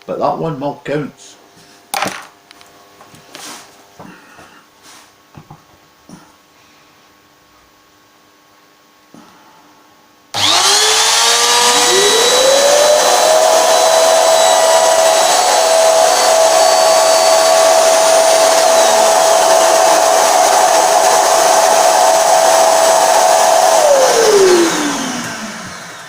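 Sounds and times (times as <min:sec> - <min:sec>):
wood router whining: 0:10.3 - 0:26.0.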